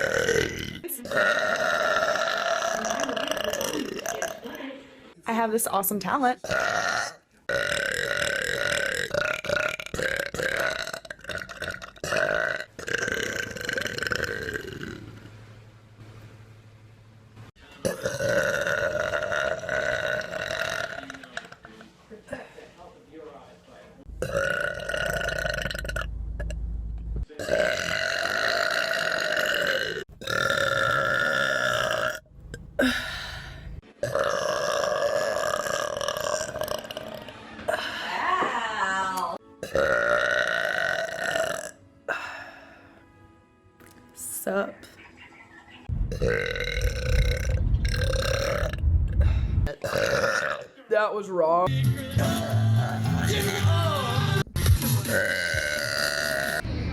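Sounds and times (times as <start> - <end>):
person burping: 0.0 - 4.6, 6.4 - 15.3, 17.8 - 21.7, 24.1 - 26.6, 27.4 - 38.2, 39.6 - 42.6, 46.1 - 50.8, 55.0 - 56.6.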